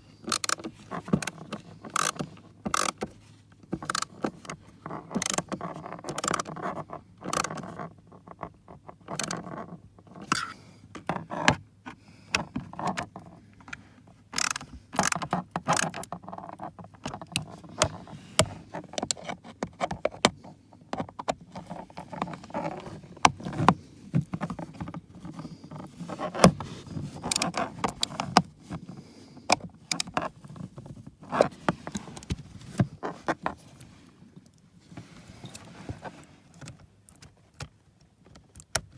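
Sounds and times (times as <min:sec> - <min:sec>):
hand tools clicking and scraping: 0:14.4 - 0:20.4.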